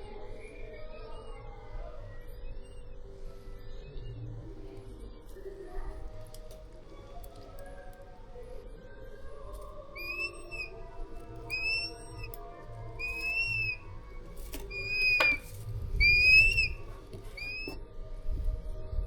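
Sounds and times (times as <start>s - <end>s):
eagle chick whistled calls: 10.0s - 17.8s.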